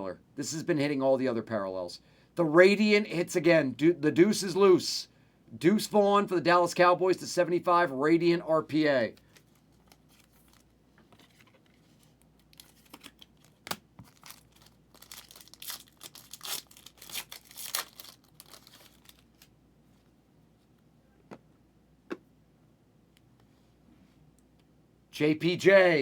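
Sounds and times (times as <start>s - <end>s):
plastic crinkling and rustling: 9.1s - 19.6s.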